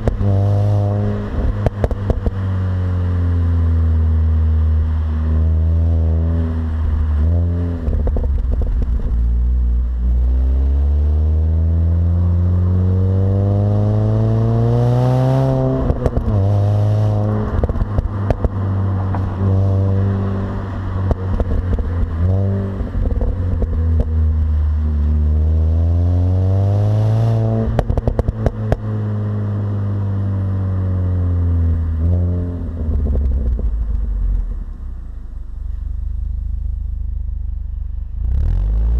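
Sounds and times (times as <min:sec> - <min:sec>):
car engine accelerating through gears: 0:00.0 - 0:37.4
exhaust crackling: 0:14.0 - 0:26.0, 0:27.2 - 0:38.9.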